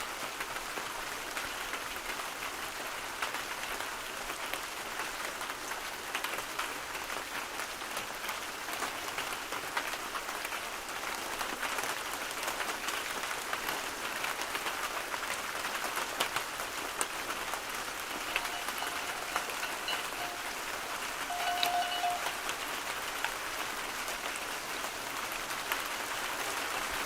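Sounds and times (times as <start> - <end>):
steady rain falling: 0.0 - 27.0
faint thin steady tone: 18.2 - 22.9.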